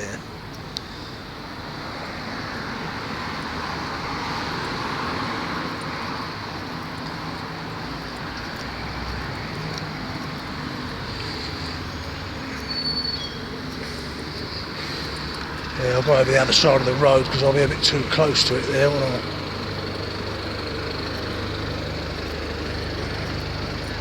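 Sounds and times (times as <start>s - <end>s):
passing vehicles rumbling: 0.0s - 24.0s
high squeal: 11.3s - 15.2s.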